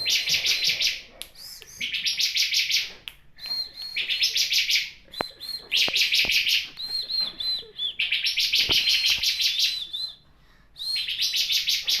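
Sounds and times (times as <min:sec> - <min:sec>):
bird whistled notes: 0:03.4 - 0:10.2, 0:10.8 - 0:12.0.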